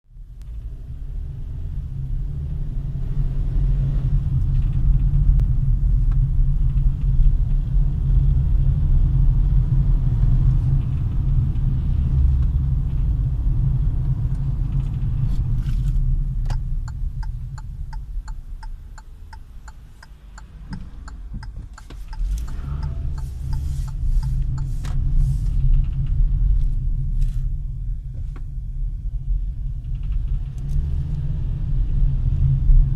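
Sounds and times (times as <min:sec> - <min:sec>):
car driving rumble: 0:00.1 - 0:32.9.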